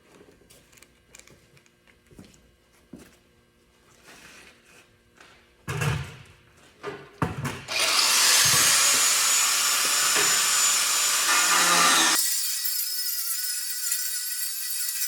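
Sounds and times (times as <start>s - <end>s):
angle grinder grinding steel: 7.7s - 15.0s.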